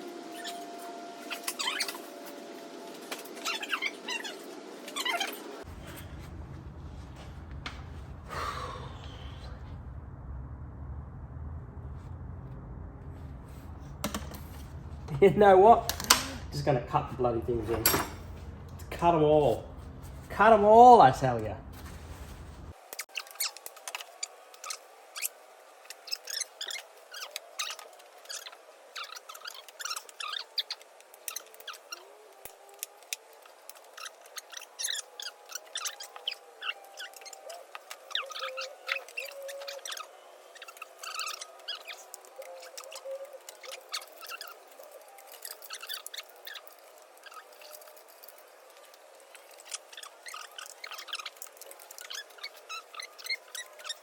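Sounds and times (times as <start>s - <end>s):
clicks and snaps of wiring work: 15.8s - 16.6s.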